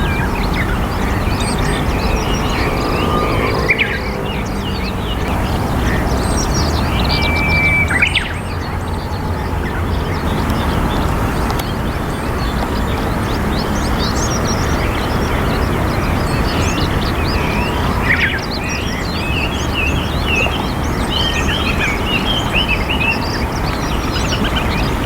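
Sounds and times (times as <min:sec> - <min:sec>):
low rumble: 0:00.0 - 0:05.8
small birds chirping: 0:00.0 - 0:25.0.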